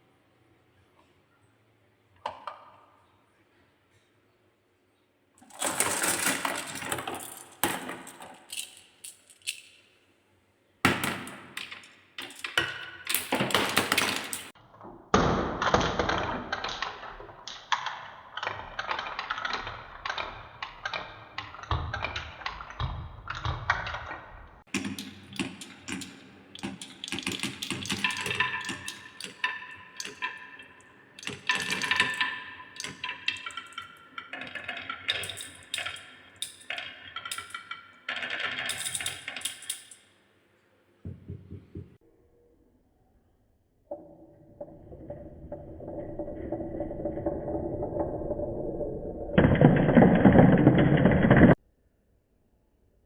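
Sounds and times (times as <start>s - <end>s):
balls rattling down wooden marble run: 5.4s - 9.9s, 10.9s - 14.6s, 15.7s - 40.0s, 44.5s - 51.6s.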